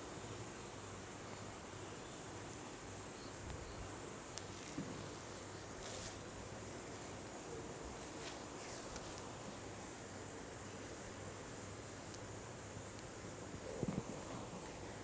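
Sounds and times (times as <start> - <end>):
steady hiss: 0.0 - 15.0
hair rustling: 4.4 - 7.4, 8.0 - 9.8.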